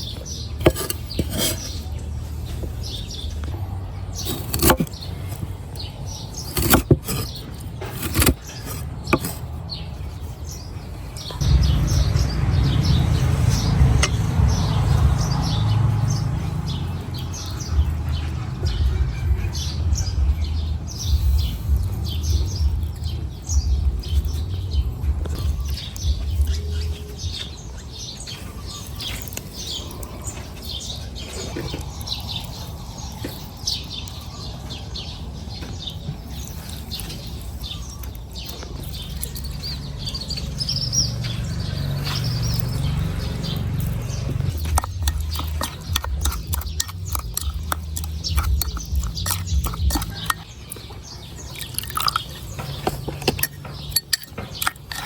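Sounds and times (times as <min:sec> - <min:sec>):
birds chirping: 0:00.0 - 0:55.0
loud low rumble: 0:11.3 - 0:26.7
sharp clicks: 0:41.2 - 0:55.0.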